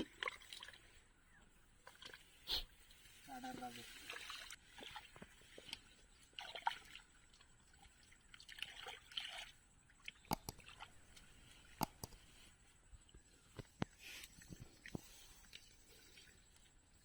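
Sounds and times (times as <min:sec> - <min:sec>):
water sloshing in a drain: 0:00.0 - 0:01.2, 0:01.8 - 0:03.1, 0:03.8 - 0:11.8
sharp clicks: 0:10.3 - 0:12.4.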